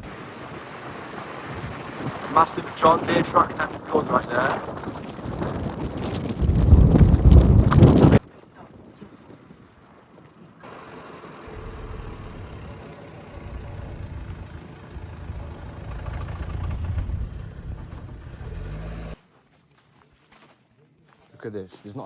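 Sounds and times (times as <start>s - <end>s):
vehicle engine rumbling: 9.2s - 19.2s.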